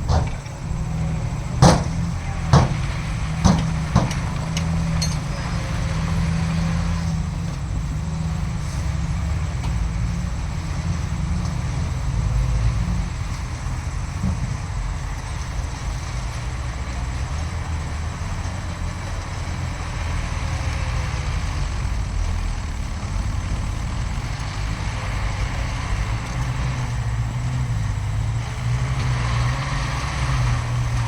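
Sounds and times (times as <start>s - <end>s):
heavy diesel machinery rumbling: 0.0s - 31.0s
sharp metal clanks: 1.6s - 5.6s.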